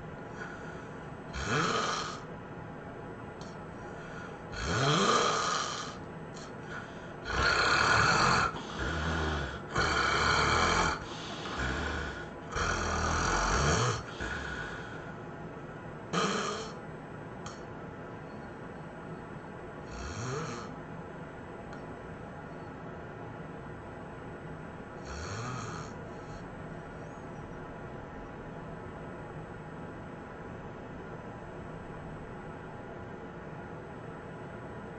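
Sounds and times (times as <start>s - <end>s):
person snoring loudly: 1.3s - 2.2s, 4.5s - 6.0s, 6.7s - 15.0s, 16.1s - 16.8s, 19.9s - 20.8s, 25.0s - 26.0s.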